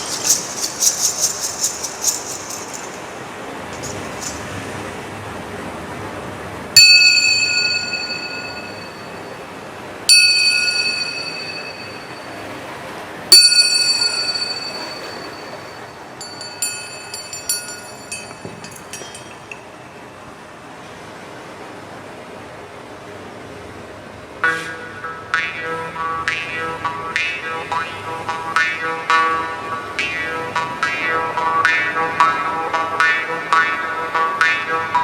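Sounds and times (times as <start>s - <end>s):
steady rushing noise: 0.0s - 35.0s
metal bell ringing: 1.3s - 4.6s, 6.8s - 12.6s, 13.3s - 20.2s
light high bell strikes: 6.8s - 9.5s, 10.1s - 12.6s, 13.3s - 19.8s.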